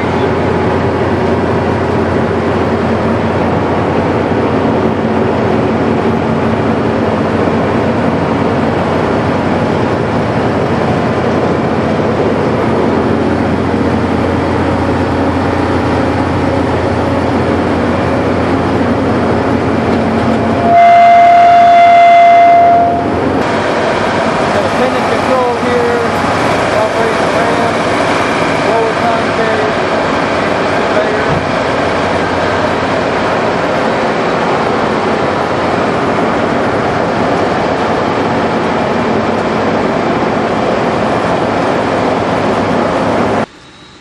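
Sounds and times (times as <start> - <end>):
diesel engine running: 0.0 - 44.0
loud horn tone: 20.5 - 23.2.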